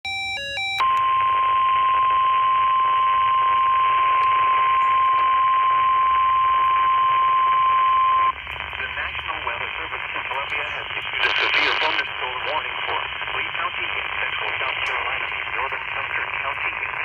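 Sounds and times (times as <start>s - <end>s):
loud high alarm tone: 0.0s - 3.4s
radio receiver hiss: 1.0s - 17.0s.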